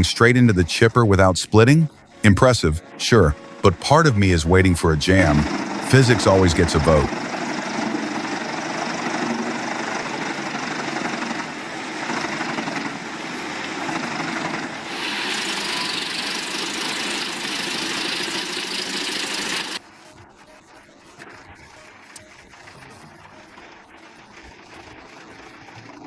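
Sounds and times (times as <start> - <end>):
wood chipper grinding logs: 5.0 - 19.8.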